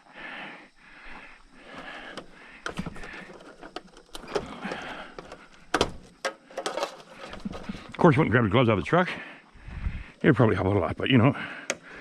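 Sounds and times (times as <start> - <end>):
wires rustling: 1.5 - 8.2.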